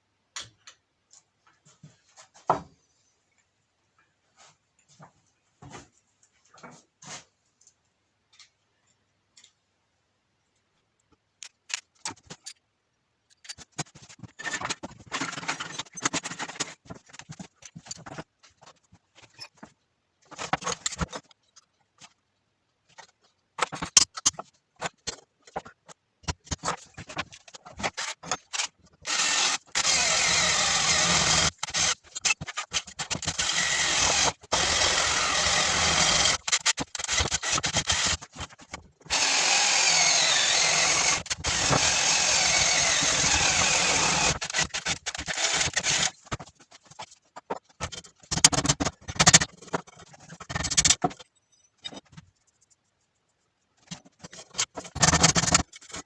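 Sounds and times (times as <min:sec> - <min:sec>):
metal parts clicking and scraping: 0:11.4 - 0:12.7, 0:13.3 - 0:22.2, 0:22.9 - 0:30.0, 0:31.4 - 0:34.6, 0:42.9 - 0:52.8, 0:53.8 - 0:56.0
power tool running: 0:39.1 - 0:46.1.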